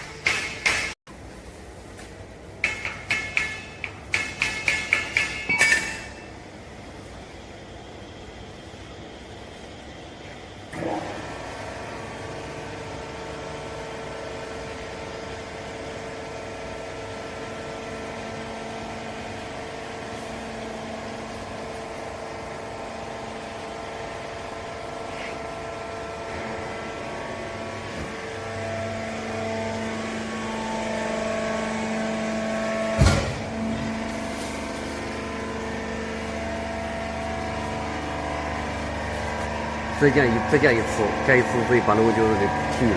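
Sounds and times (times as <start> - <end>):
hydraulic pump motor whine: 7.4 - 42.9.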